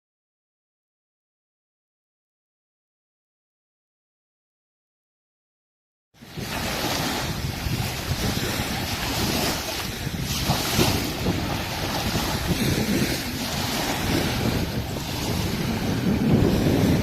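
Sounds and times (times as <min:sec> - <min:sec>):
waves washing on shore: 0:06.2 - 0:17.0
wind buffeting microphone: 0:06.2 - 0:17.0.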